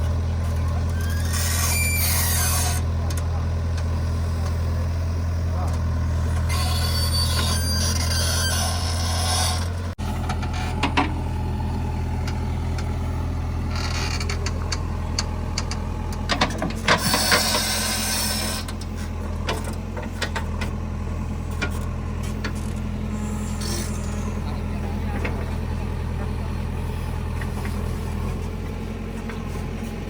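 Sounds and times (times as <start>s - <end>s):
diesel engine running: 0.0s - 30.0s
machine clanks and knocks: 10.2s - 11.2s, 14.1s - 17.8s, 19.4s - 20.8s.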